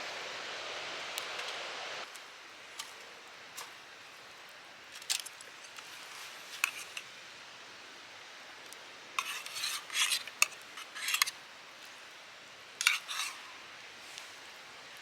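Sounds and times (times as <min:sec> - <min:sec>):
wind: 0:00.0 - 0:15.0
metal utensils clinking: 0:09.2 - 0:11.4, 0:12.8 - 0:13.6.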